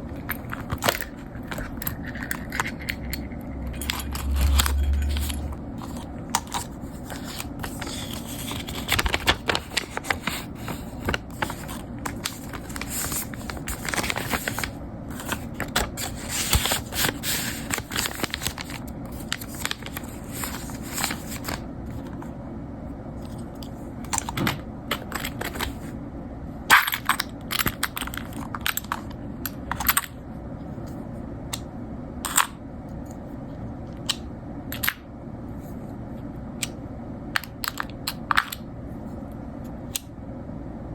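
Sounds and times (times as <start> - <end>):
paper or plastic crinkling: 4.0 - 22.2.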